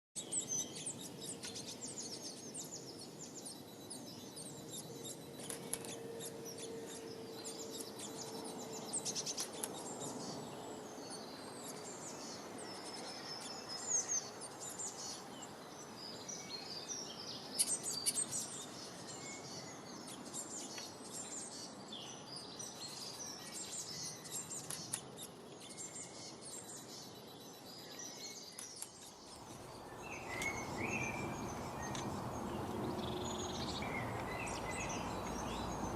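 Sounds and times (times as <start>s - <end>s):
birds chirping: 0.2s - 35.9s
steady background hiss: 25.6s - 35.9s.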